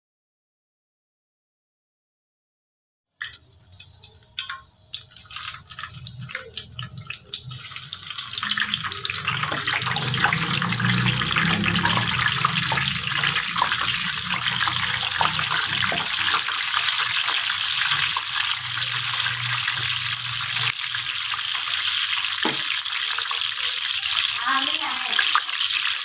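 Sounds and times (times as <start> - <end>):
tap water running into sink: 3.2 - 25.5
water splashes and knocks: 22.4 - 22.7.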